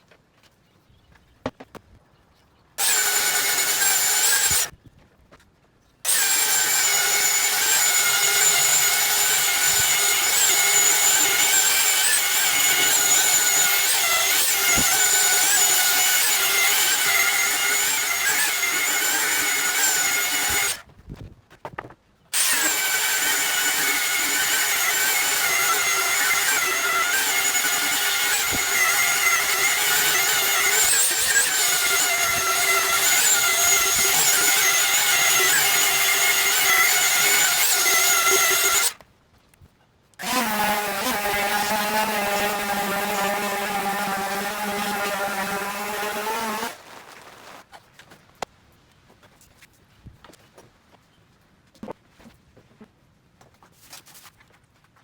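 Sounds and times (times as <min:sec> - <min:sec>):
electric power sander whining: 0:02.8 - 0:04.7, 0:06.1 - 0:20.8, 0:22.4 - 0:39.0, 0:40.2 - 0:47.6.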